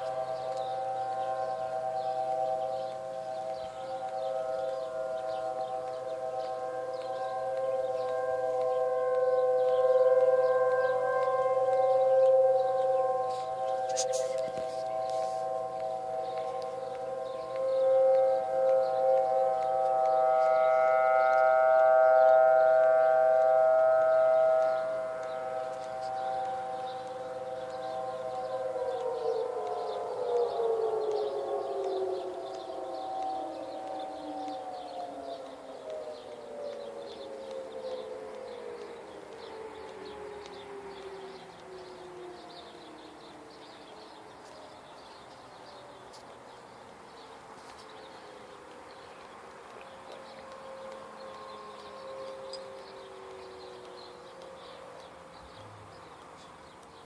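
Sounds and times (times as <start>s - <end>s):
warning sirens sounding: 0.0s - 57.0s.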